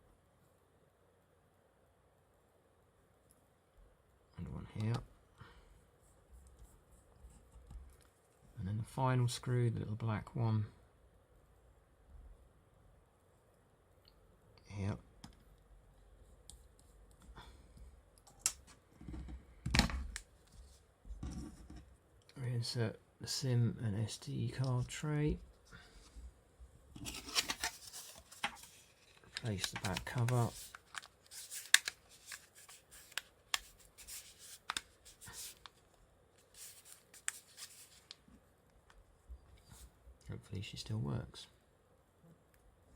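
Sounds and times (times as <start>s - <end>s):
soft rubbing and handling: 5.6s - 8.6s, 20.3s - 22.0s, 24.6s - 40.0s.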